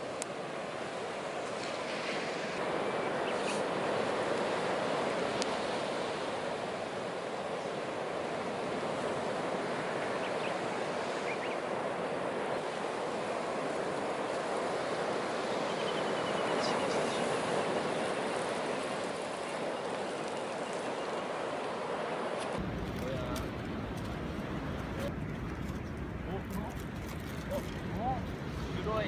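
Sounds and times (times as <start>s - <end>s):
sea surf on shore: 0.0s - 29.0s
fire crackling: 22.4s - 29.0s.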